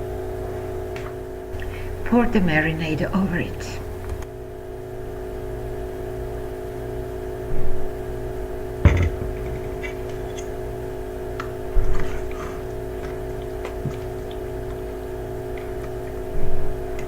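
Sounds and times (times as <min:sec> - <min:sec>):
machine hum with low rumble: 0:00.0 - 0:17.0
dull knocks: 0:08.8 - 0:10.6.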